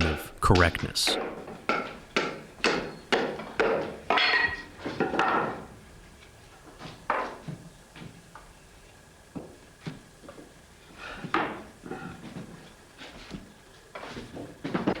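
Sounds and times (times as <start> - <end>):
hand tool knocking on wood: 1.1 - 5.6.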